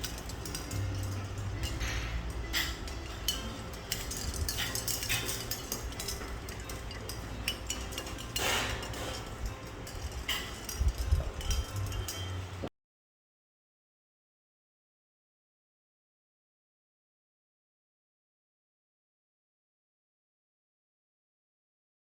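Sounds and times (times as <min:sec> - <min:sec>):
dishes and cutlery clinking: 0:00.0 - 0:12.7
steady low hum: 0:00.0 - 0:12.7.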